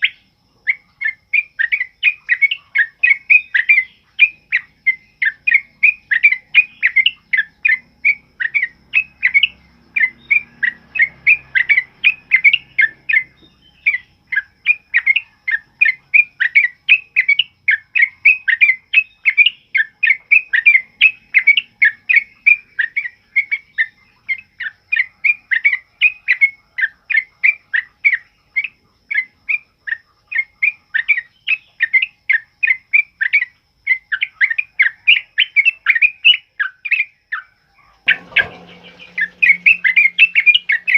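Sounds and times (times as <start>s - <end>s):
bird singing bubbling notes: 38.1s - 40.9s.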